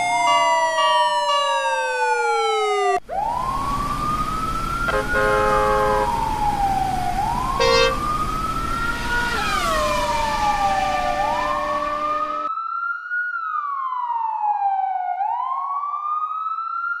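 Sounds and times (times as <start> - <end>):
engine and road noise: 0.0 - 12.5
siren wailing: 0.0 - 17.0
horn blast: 4.9 - 6.2, 7.6 - 8.0, 10.9 - 12.5.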